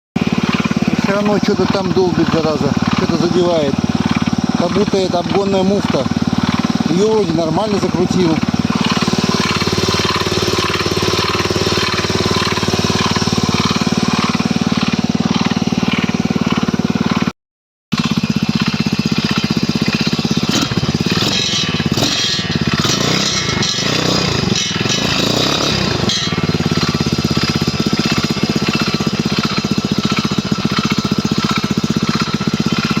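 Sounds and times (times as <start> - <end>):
engine running with fast knocking: 0.2 - 33.0.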